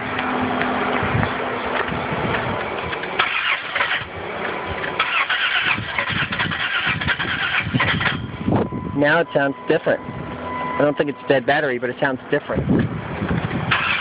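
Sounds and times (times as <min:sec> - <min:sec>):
car engine cranking: 0:02.6 - 0:08.5, 0:12.8 - 0:14.0.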